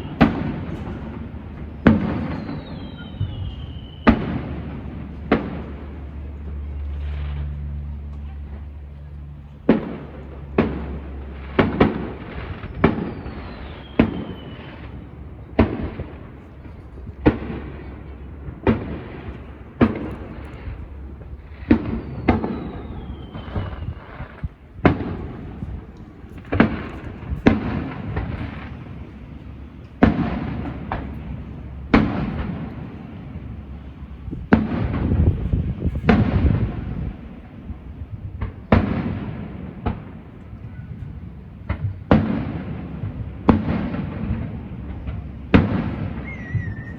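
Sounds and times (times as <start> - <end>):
fireworks bangs with rumble: 0.0 - 8.8, 9.4 - 46.9
falling whistle: 2.2 - 4.2, 46.2 - 46.9.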